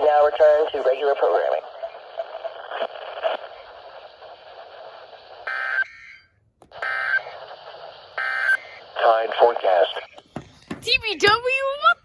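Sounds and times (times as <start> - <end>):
radio static hiss: 0.0 - 5.9, 6.7 - 10.3.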